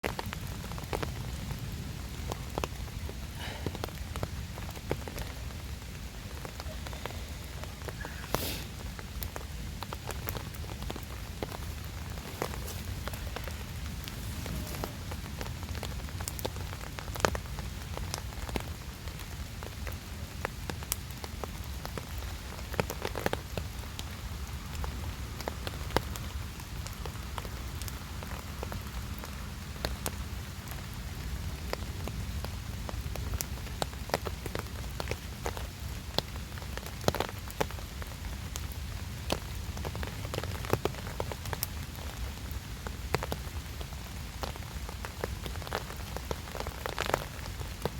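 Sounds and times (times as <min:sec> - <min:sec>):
steady rainfall: 0:00.0 - 0:47.9.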